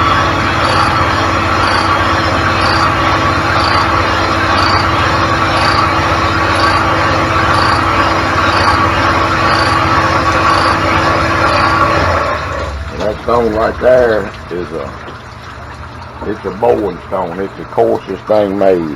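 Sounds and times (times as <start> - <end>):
honing machine grinding whir: 0.0 - 15.1
constant hum: 0.0 - 18.9
faint ticking: 0.6 - 12.1.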